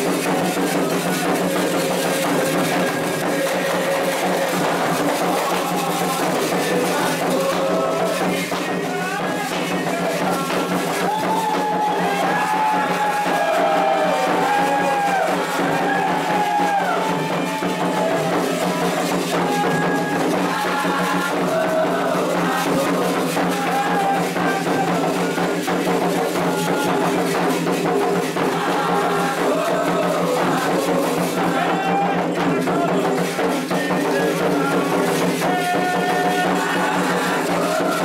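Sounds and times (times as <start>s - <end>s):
hand drumming: 0.0s - 38.0s
voices singing a chant: 0.0s - 38.0s.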